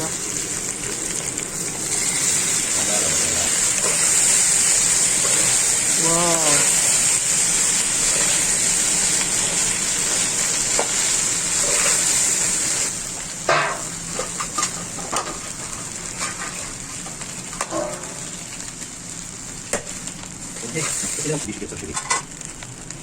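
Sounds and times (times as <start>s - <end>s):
rice sizzling in a pan: 0.0s - 23.0s
spatula scraping a pan: 10.1s - 12.3s.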